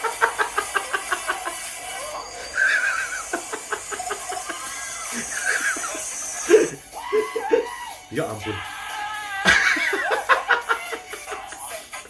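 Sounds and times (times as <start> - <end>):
hearty laughter: 0.0 - 1.7, 2.4 - 7.6, 9.4 - 11.8
high-pitched squealing laugh: 0.0 - 7.8, 9.3 - 11.8.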